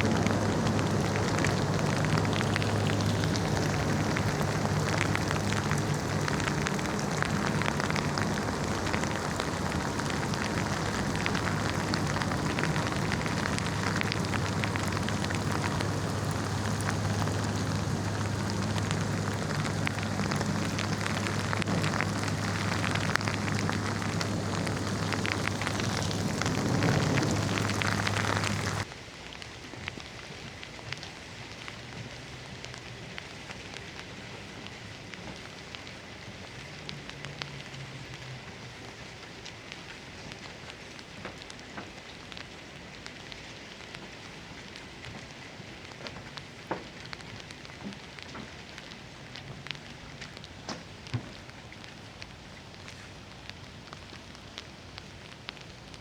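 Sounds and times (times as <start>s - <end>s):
steady low hum: 0.0s - 28.9s
heavy rain on hard surfaces: 0.0s - 56.0s.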